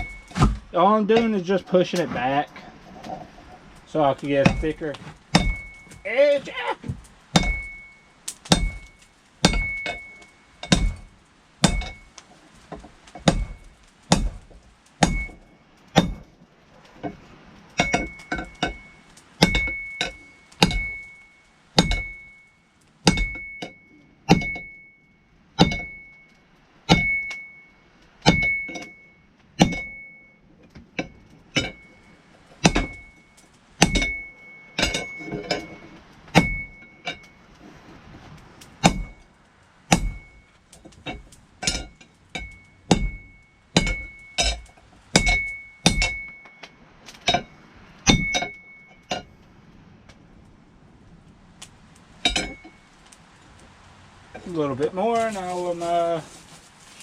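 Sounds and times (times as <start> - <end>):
hammer striking steel on anvil: 3.9 - 6.1, 6.9 - 12.2, 13.2 - 15.4, 17.8 - 24.8, 25.6 - 26.2, 26.9 - 30.2, 32.6 - 33.2, 33.8 - 37.4, 38.8 - 39.3, 39.9 - 49.3, 52.2 - 52.8.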